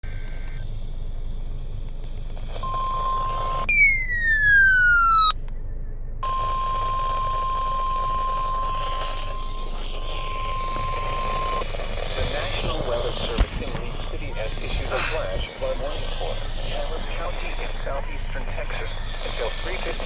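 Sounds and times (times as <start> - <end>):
steady high alarm beep: 2.6 - 5.4
falling electronic sweep: 3.7 - 5.4
radio hiss: 8.6 - 20.0.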